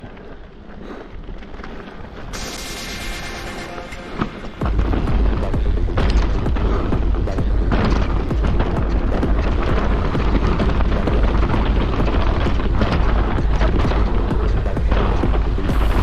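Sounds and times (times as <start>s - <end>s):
bike tyres rattling over stones: 0.0s - 16.0s
wind buffeting microphone: 4.1s - 16.0s.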